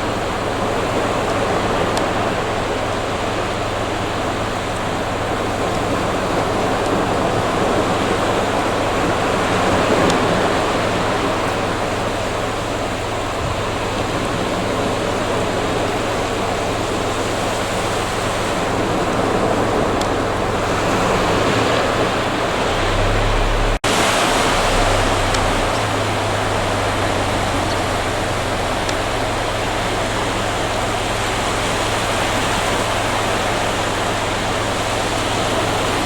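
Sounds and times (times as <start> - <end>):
waves washing on beach: 0.0 - 36.0.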